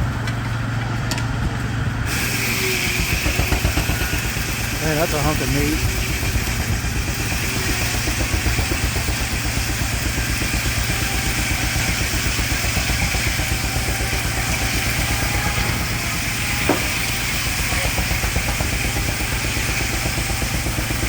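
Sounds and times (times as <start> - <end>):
steam engine exhaust beating: 0.0 - 21.0
steam hiss: 2.1 - 21.0.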